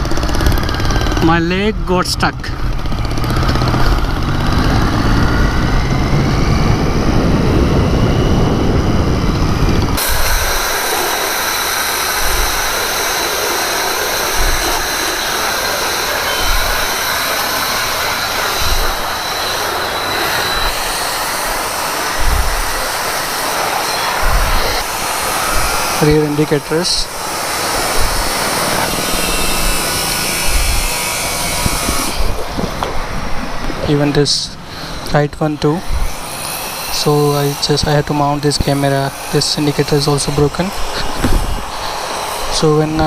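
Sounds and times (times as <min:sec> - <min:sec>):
motorcycle engine rumble: 0:00.0 - 0:42.1
wind rush on microphone: 0:00.0 - 0:43.0
steady hiss with high whine: 0:09.2 - 0:43.0.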